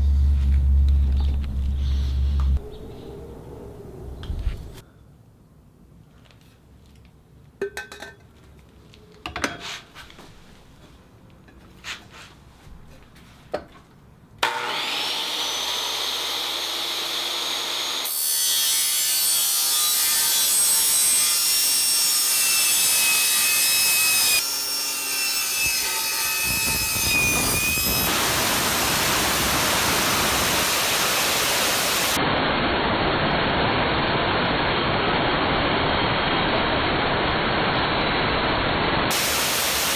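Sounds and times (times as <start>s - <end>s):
power tool cutting metal: 14.4s - 32.2s, 39.1s - 39.9s.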